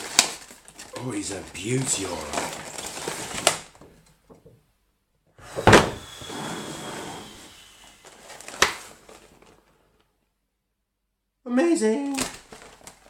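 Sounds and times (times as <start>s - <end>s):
packaging sliding and scraping: 0.0s - 3.8s, 5.5s - 9.6s.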